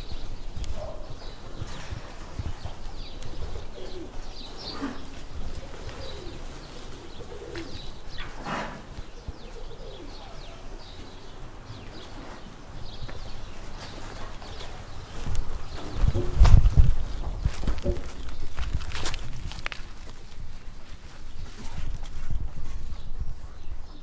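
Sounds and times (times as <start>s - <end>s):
pigeons cooing: 0.0s - 19.0s
small birds chirping: 0.0s - 24.0s.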